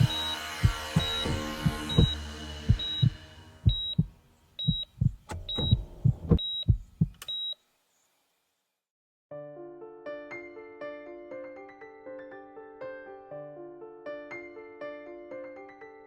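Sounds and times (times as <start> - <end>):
heartbeat double thumps: 0.0 - 7.2
heart monitor beep: 0.0 - 7.6.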